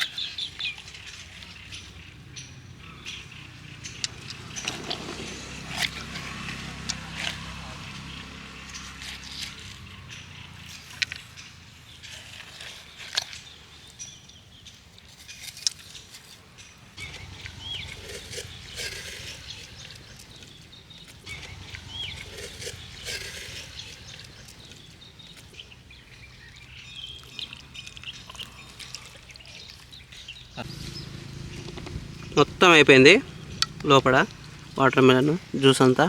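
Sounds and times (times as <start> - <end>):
outdoor ambience: 0.0 - 36.0
short chirping calls: 0.0 - 36.0
sharp ticks: 0.1 - 7.4, 30.3 - 35.0
knocks and scrapes on watermelon: 17.0 - 25.5.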